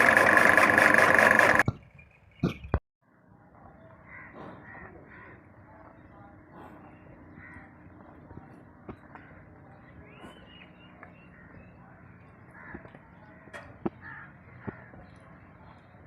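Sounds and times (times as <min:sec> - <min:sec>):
birds calling: 0:01.6 - 0:02.8, 0:03.7 - 0:16.0
crow cawing: 0:04.0 - 0:05.5, 0:07.3 - 0:07.7, 0:12.5 - 0:12.9, 0:14.0 - 0:14.9.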